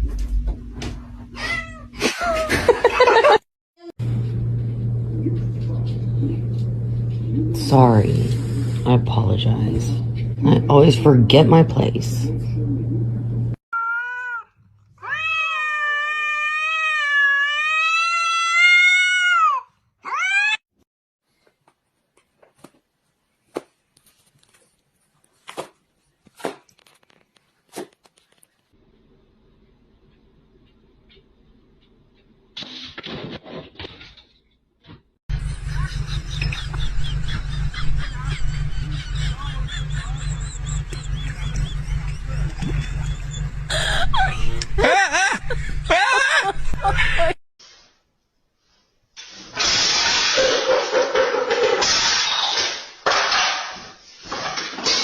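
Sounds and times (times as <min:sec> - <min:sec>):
cat meowing: 0:13.8 - 0:20.6
steady low rumble: 0:35.3 - 0:47.4.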